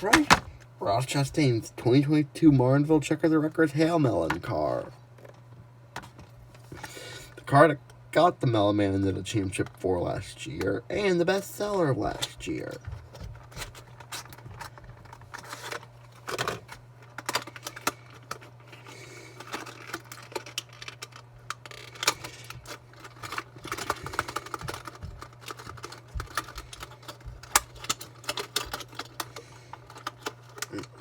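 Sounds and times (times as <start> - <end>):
packaging clicks and rustles: 0.0 - 0.7, 12.5 - 31.0.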